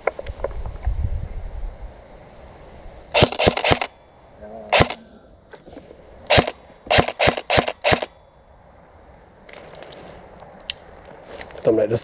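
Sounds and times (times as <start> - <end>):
airsoft gun shots: 3.1 - 3.9, 4.7 - 5.0, 6.3 - 8.2.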